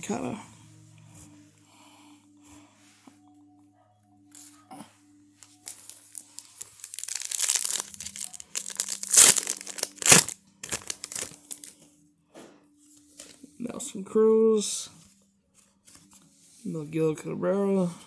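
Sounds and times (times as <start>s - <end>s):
foil wrapper tearing and crinkling: 5.4s - 11.7s.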